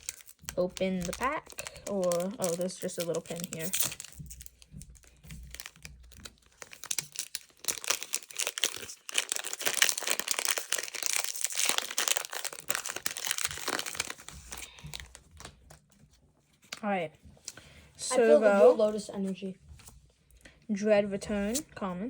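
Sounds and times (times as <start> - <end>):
plastic wrapper crinkling: 0.0 - 16.8.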